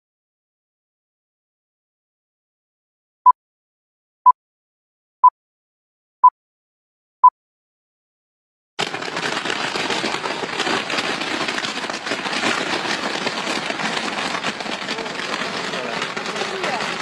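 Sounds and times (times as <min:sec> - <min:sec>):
fireworks crackling: 0:08.8 - 0:17.0.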